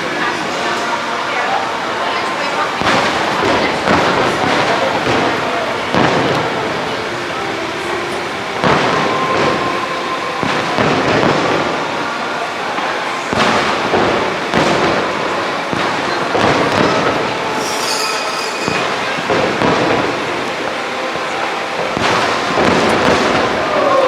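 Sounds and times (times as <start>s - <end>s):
firework booms and crackling: 0.0s - 24.0s
high firework whistle: 1.8s - 24.0s.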